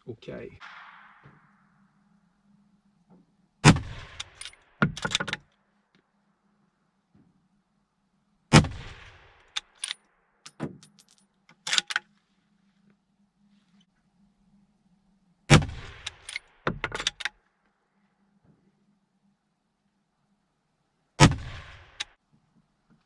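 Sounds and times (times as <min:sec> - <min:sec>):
rifle shots echoing: 0:03.6 - 0:04.6
metallic clicks and clinks: 0:04.2 - 0:05.4, 0:09.6 - 0:12.0, 0:16.0 - 0:17.3.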